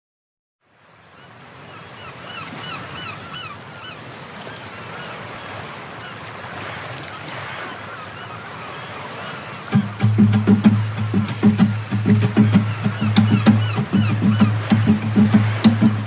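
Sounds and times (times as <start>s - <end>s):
bird calling repeated notes: 9.4s - 16.0s
steady rushing noise: 9.8s - 16.0s.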